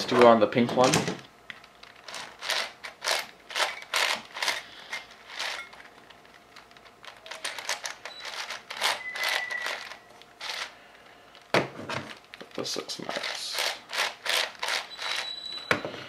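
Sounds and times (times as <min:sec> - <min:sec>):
speedcube clacking: 0:02.0 - 0:10.7, 0:13.2 - 0:15.3.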